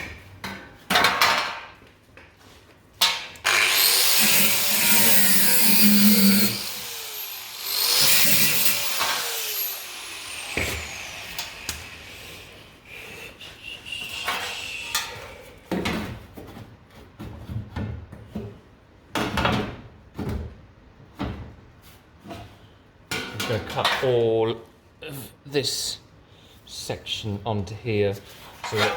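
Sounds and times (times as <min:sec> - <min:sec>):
angle grinder cutting steel: 0:03.4 - 0:15.4.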